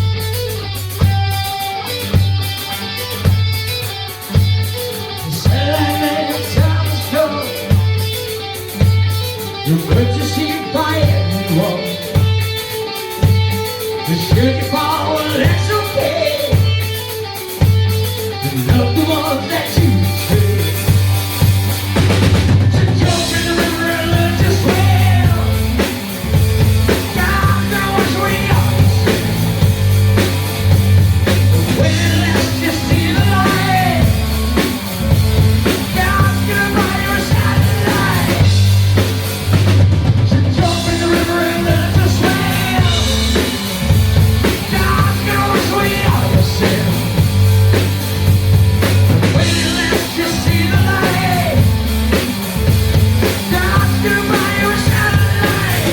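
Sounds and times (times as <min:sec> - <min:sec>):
drum kit: 0:00.0 - 0:55.9
heavy bass line: 0:00.0 - 0:55.9
person singing: 0:05.1 - 0:07.9, 0:09.5 - 0:12.2, 0:14.0 - 0:16.8, 0:18.3 - 0:20.9, 0:22.7 - 0:25.9, 0:26.9 - 0:29.6, 0:31.5 - 0:34.8, 0:35.6 - 0:38.6, 0:40.3 - 0:43.8, 0:44.4 - 0:47.2, 0:49.3 - 0:51.8, 0:53.2 - 0:55.9.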